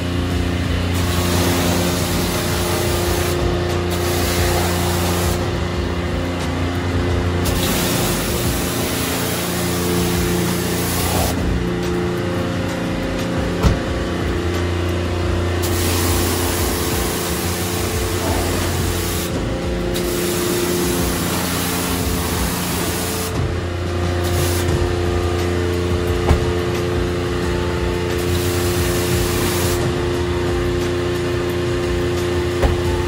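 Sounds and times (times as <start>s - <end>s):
steady hum: 0.0s - 33.0s
high-pressure water spray on car: 0.8s - 5.6s, 7.4s - 11.5s, 15.6s - 23.4s, 24.1s - 25.1s, 28.1s - 30.1s.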